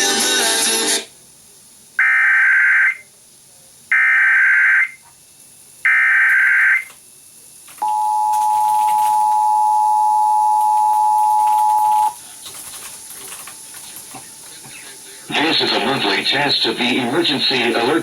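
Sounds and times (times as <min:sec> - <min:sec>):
two-tone attention signal: 0:07.8 - 0:12.2.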